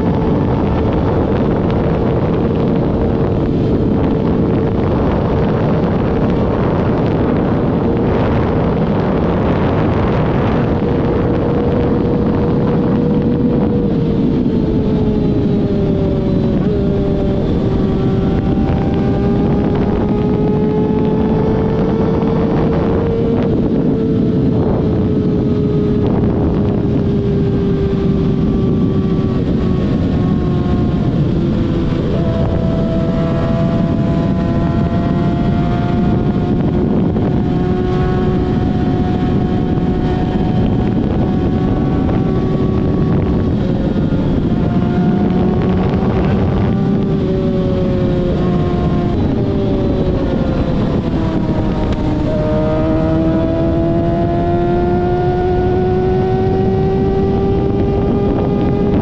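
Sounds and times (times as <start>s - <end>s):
dense rushing noise: 0.0s - 37.5s, 38.2s - 59.0s
vehicle engine droning: 0.0s - 59.0s.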